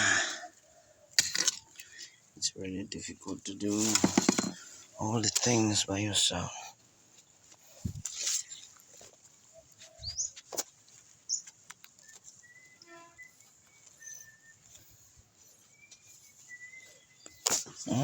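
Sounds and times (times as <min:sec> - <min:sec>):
hand digging in gravelly soil: 0:03.6 - 0:05.8, 0:07.6 - 0:09.3
bird chirps: 0:09.5 - 0:10.4, 0:11.2 - 0:18.0.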